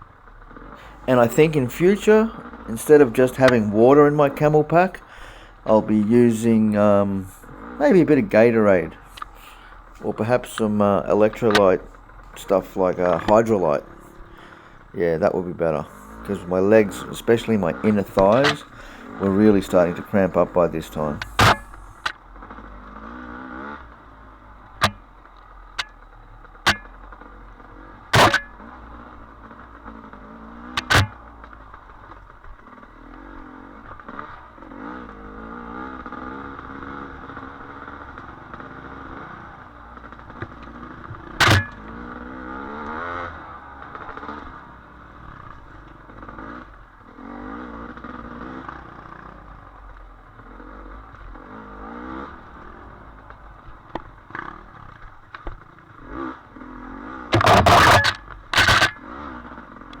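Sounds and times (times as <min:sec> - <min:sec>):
dirt bike engine revving: 0:00.4 - 1:00.0
sharp knocks and clatter: 0:24.8 - 0:25.0, 0:26.6 - 0:27.0, 0:28.1 - 0:28.7, 0:30.7 - 0:31.6, 0:40.1 - 0:42.0, 0:57.3 - 0:59.0.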